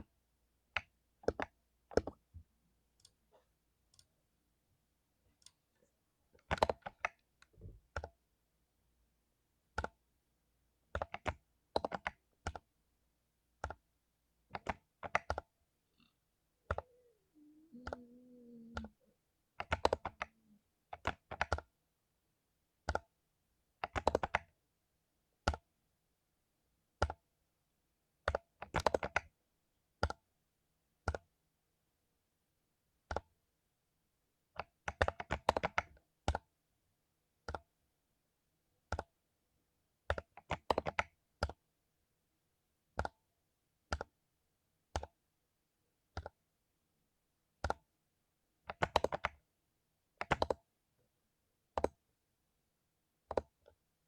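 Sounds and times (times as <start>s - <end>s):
mechanical keyboard typing: 0.8s - 2.2s, 6.4s - 7.2s, 10.9s - 12.7s, 14.5s - 15.5s, 19.6s - 21.7s, 23.8s - 24.5s, 28.3s - 29.3s, 34.6s - 36.4s, 40.1s - 41.6s, 48.7s - 49.4s, 50.2s - 50.6s, 53.3s - 53.7s.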